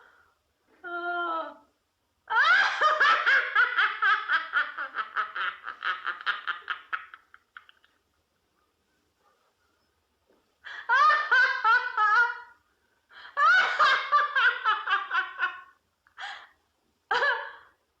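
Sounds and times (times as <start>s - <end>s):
woman laughing: 2.3s - 8.0s, 10.7s - 12.6s, 13.2s - 16.4s, 17.1s - 17.7s.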